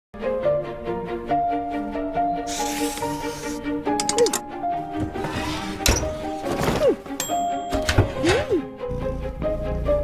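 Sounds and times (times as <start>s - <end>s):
light background music: 0.2s - 10.0s
spray-like hiss: 2.5s - 3.6s.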